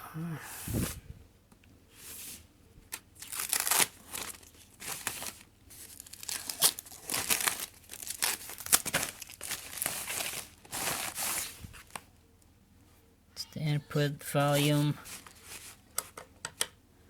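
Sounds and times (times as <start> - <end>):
packaging crinkling and tearing: 2.9 - 12.1.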